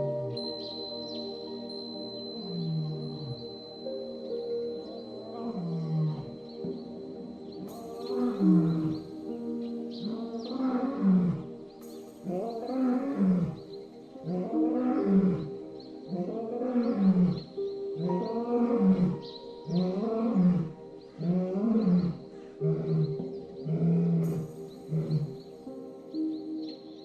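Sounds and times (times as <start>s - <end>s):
soft background music: 0.0s - 27.0s
big cat roaring: 10.1s - 11.5s, 16.1s - 19.2s.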